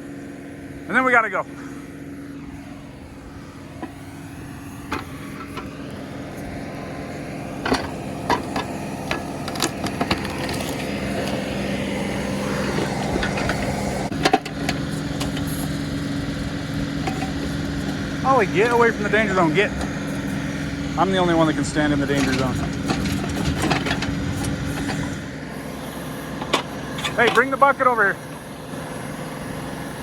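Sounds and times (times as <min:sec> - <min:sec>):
tractor diesel engine running: 0:00.0 - 0:30.0.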